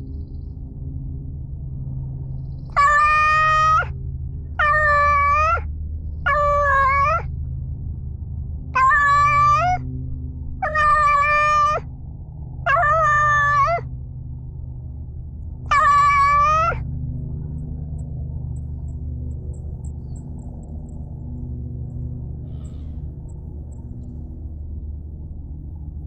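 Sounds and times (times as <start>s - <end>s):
cat meowing: 2.8s - 3.9s, 4.6s - 5.7s, 6.3s - 7.3s, 8.8s - 9.8s, 10.6s - 11.8s, 12.7s - 13.8s, 15.7s - 16.8s
low rumble: 5.6s - 26.0s.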